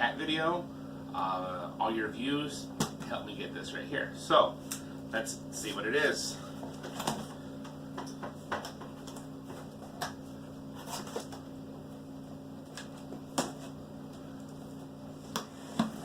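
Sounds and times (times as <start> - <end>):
steady low hum: 0.0 - 16.0
cardboard clicks scrapes and rustles: 10.7 - 11.5.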